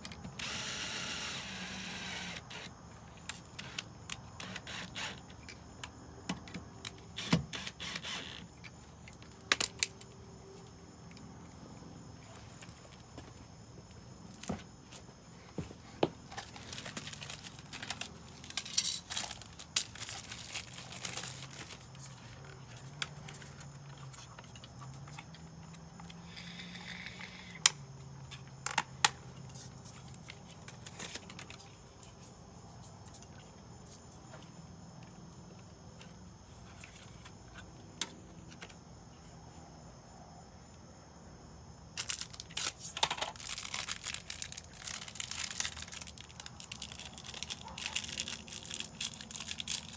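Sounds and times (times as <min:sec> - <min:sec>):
rustling and crinkling: 0:11.4 - 0:25.5, 0:29.5 - 0:34.5, 0:42.0 - 0:49.9.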